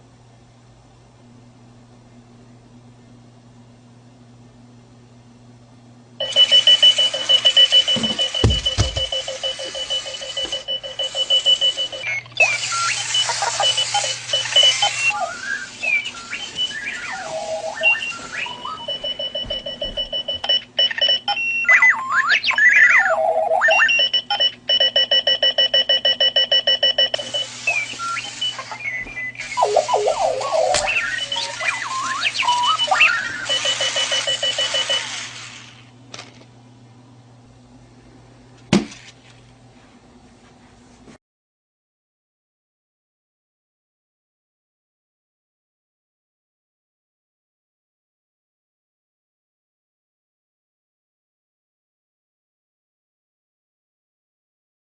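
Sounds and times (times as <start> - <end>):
electronic alarm beeping: 6.2 - 35.7
warbling sweeping chirps: 27.6 - 33.6.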